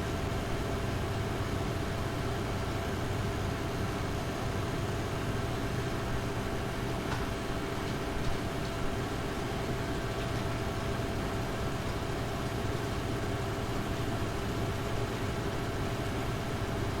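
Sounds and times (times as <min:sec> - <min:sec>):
computer cooling fans whirring: 0:00.0 - 0:17.0.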